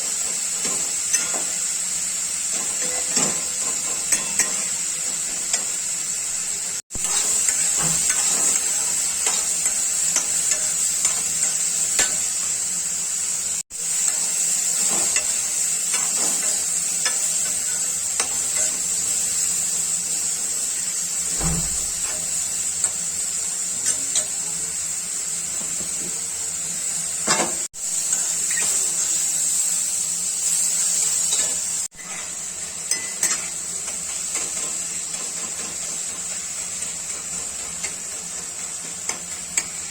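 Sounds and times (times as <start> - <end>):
food sizzling in a pan: 0.0 - 39.9
spoon scraping a pan: 0.3 - 5.9, 6.9 - 12.6, 13.8 - 19.2, 27.2 - 29.2, 30.5 - 39.9.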